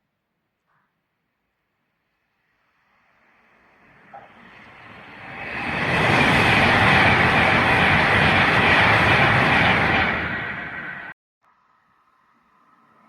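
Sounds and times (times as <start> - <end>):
train passing: 2.4 - 11.1.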